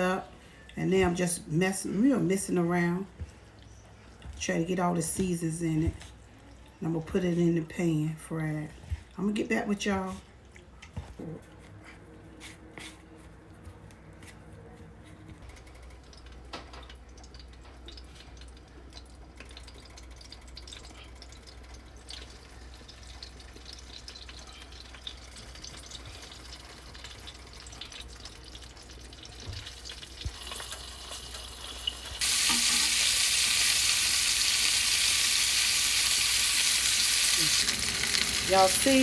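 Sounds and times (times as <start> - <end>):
food sizzling in oil: 22.1 - 39.0.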